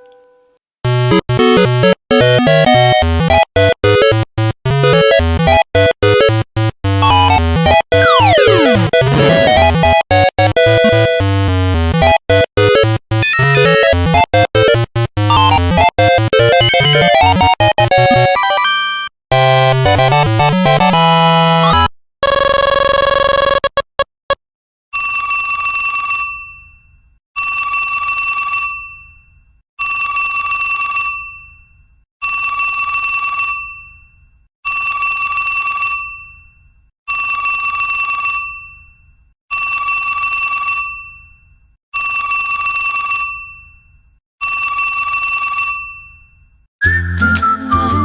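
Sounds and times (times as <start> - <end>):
melodic ringtone: 0.9 - 11.3, 11.9 - 21.8
telephone bell ringtone: 13.2 - 14.3, 25.0 - 26.8, 27.4 - 31.6, 32.2 - 34.1, 34.7 - 36.4, 37.1 - 46.4.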